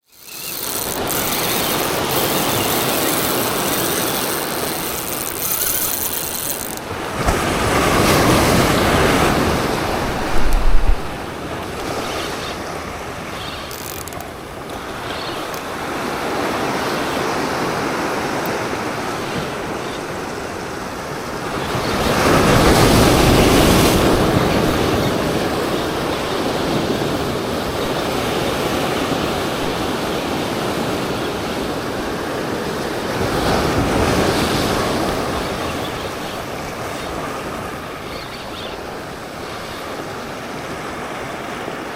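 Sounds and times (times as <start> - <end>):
wind on microphone: 0.4 - 13.4
surf breaking on rocks: 0.5 - 13.3.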